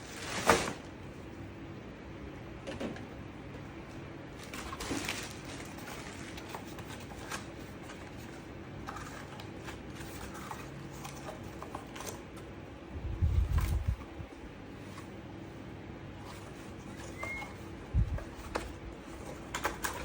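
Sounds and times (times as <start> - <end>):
faint steady hum: 0.0 - 20.0
objects clicking and rustling: 16.3 - 20.0.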